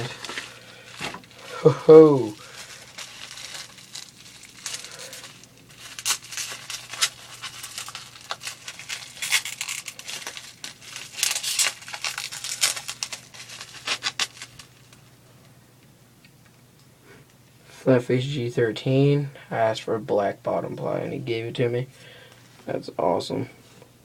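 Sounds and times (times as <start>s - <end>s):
packaging crinkling and tearing: 0.0s - 15.1s.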